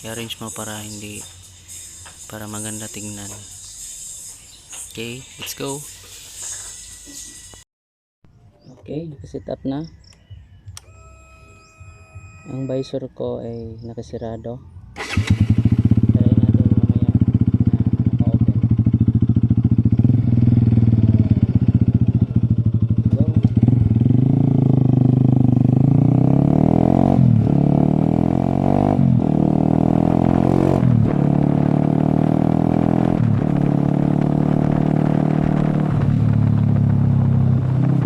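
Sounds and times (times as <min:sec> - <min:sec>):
motorcycle engine accelerating: 0:10.7 - 0:13.0, 0:15.0 - 0:38.0.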